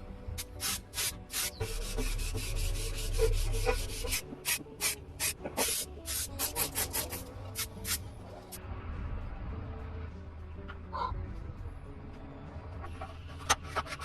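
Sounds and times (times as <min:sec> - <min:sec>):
sanding strokes rasping: 0:00.4 - 0:08.0.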